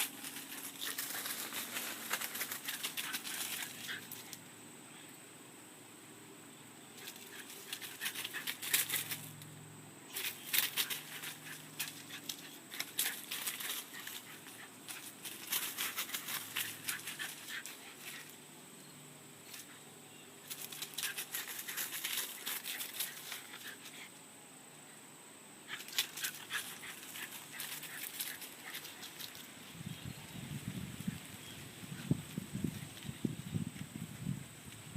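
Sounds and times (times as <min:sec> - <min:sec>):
rustling and clicking: 0:00.0 - 0:04.4, 0:07.0 - 0:09.5, 0:10.1 - 0:18.4, 0:20.4 - 0:24.0, 0:25.7 - 0:29.6.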